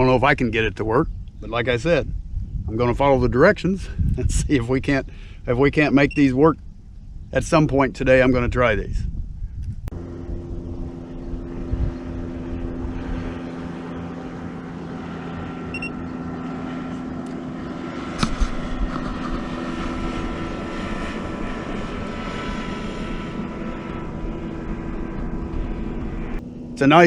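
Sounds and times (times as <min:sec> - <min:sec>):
motor drone: 0:09.2 - 0:27.0
held tones: 0:15.6 - 0:16.2.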